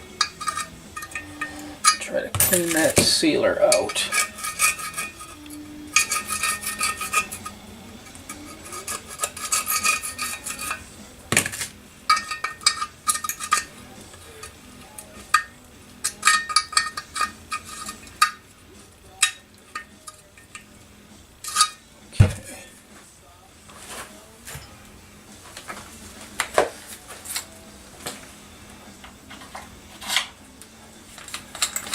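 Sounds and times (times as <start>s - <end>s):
drill bit scraping metal: 0.2s - 2.2s, 3.6s - 10.9s.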